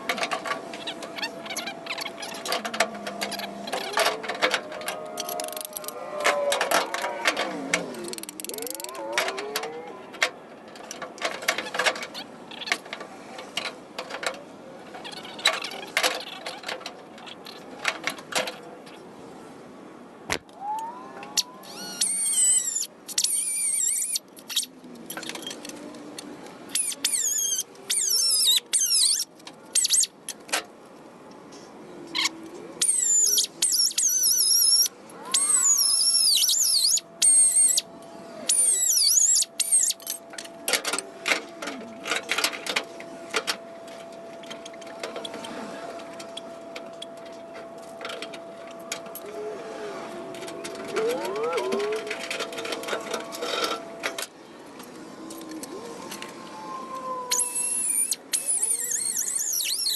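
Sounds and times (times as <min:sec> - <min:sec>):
power tool squealing on steel: 0:21.4 - 0:24.7, 0:26.8 - 0:30.1, 0:32.8 - 0:37.8, 0:38.5 - 0:40.2, 0:57.3 - 0:59.9.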